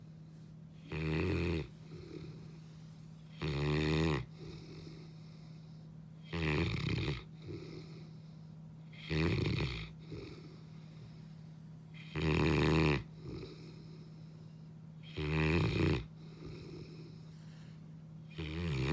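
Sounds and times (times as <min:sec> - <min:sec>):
dog breathing quietly: 0:00.0 - 0:06.0
dog snoring: 0:00.8 - 0:17.7, 0:18.3 - 0:18.9.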